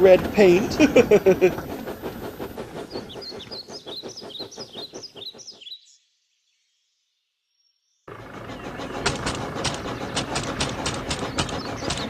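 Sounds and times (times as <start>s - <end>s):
toy train clicking: 0.0s - 4.7s, 8.8s - 12.0s
birds chirping: 0.0s - 6.8s, 8.1s - 12.0s.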